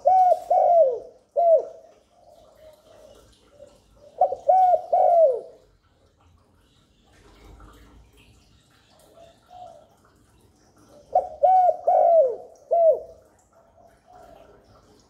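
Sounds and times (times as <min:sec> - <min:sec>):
dove cooing: 0:00.0 - 0:05.7, 0:10.8 - 0:15.0.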